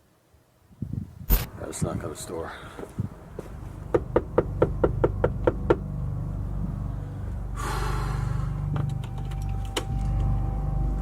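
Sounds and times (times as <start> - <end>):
low steady hum: 0.8 - 11.0
knuckles knocking on door: 3.9 - 5.8
short breath-like rushing: 7.0 - 8.7.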